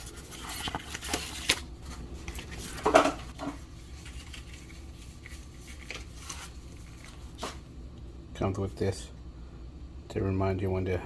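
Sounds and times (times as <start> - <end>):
packaging rustling: 0.0 - 7.6
rough handling sound: 0.0 - 7.7.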